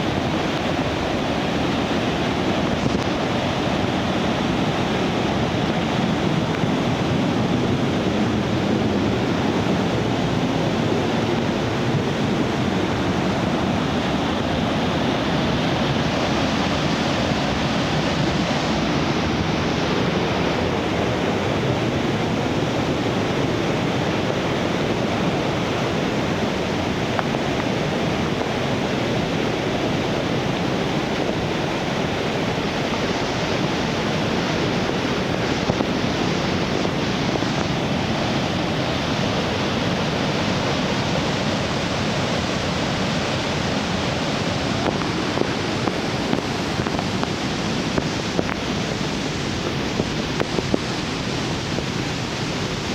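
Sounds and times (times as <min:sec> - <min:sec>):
waterfall rushing: 0:00.0 - 0:52.9.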